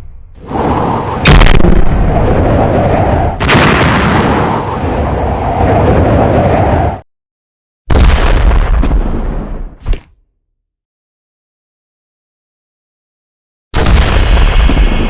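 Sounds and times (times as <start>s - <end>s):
explosion blast rumble: 0.0s - 7.0s, 7.9s - 9.7s, 13.8s - 15.0s
sharp explosion blasts: 0.0s - 7.0s, 7.9s - 9.8s, 13.8s - 15.0s.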